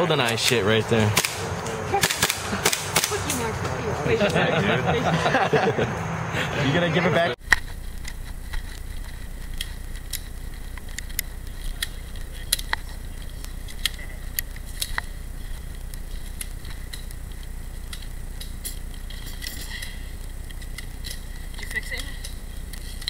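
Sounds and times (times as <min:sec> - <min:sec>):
low rumble: 0:07.3 - 0:23.0.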